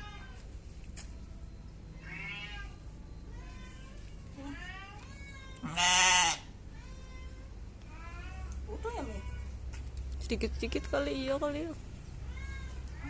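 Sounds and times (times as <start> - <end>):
cats meowing: 0.0 - 0.4, 1.9 - 9.6, 12.2 - 13.0
goat bleating: 4.5 - 6.5.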